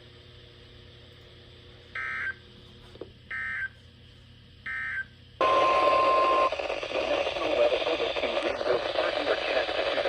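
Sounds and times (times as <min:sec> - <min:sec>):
faint radio static: 0:05.4 - 0:10.0.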